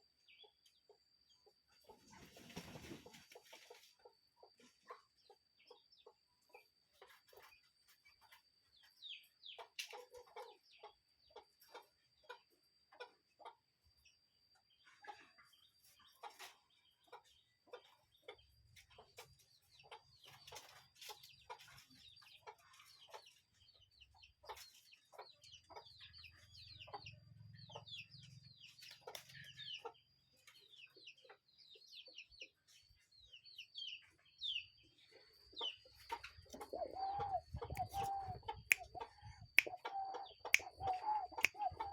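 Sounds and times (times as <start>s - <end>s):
birds chirping: 15.0s - 41.9s.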